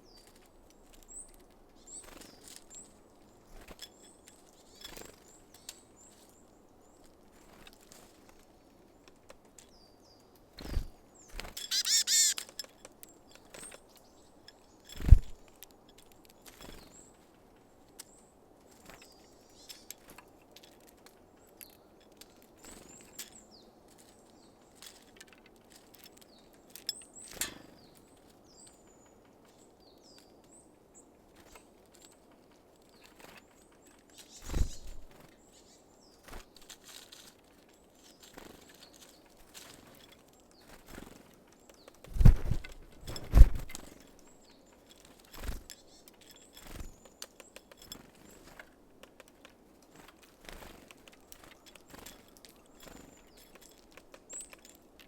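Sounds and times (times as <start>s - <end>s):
birds pecking at seeds: 0.1s - 30.7s, 31.3s - 55.0s
birds chirping: 10.7s - 12.4s.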